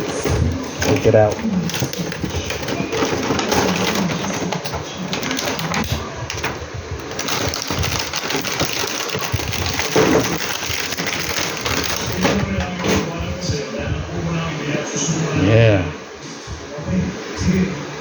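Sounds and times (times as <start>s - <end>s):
plastic toy clicks and rattles: 0.0s - 13.0s.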